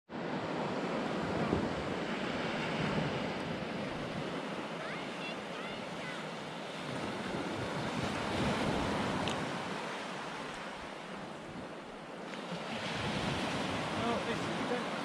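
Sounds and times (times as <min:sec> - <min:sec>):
sea waves breaking on shore: 0:00.1 - 0:15.0
wind buffeting microphone: 0:00.9 - 0:15.0.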